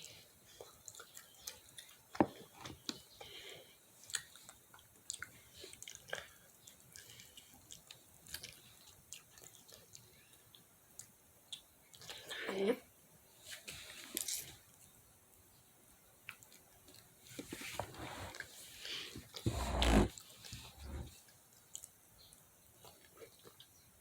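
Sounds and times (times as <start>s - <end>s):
person chewing fried chicken: 4.1s - 12.2s.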